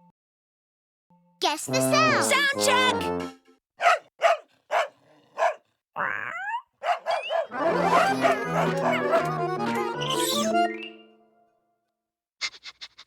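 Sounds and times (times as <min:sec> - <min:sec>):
cartoon dog barks: 0:03.8 - 0:09.4.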